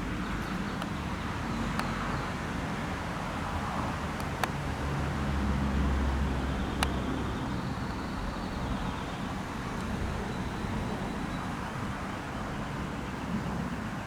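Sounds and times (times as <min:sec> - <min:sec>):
distant engine rumble: 0:04.1 - 0:13.8.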